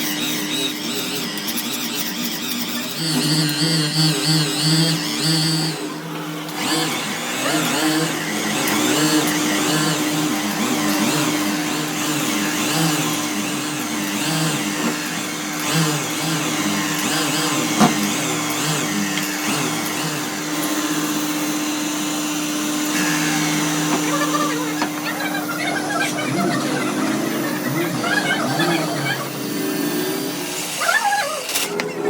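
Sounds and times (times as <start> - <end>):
power tool working wood: 0.0 - 32.0.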